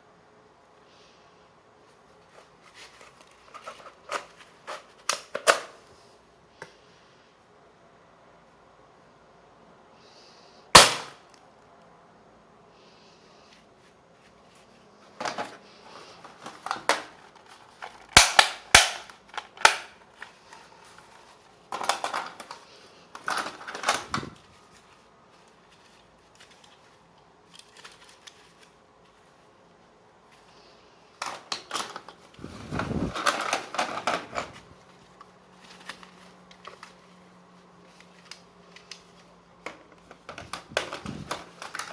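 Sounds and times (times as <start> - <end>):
toy guns snapping: 10.8 - 11.2, 18.1 - 20.0.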